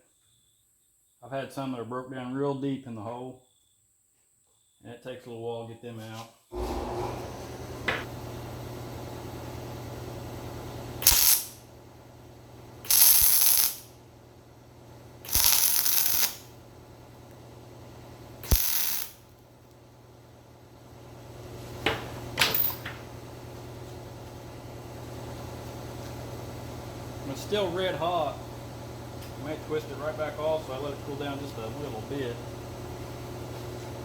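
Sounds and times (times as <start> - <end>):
steady low hum: 8.0 - 34.0
welding arc crackling: 11.0 - 11.6, 12.9 - 13.9, 15.3 - 16.6, 18.4 - 19.3.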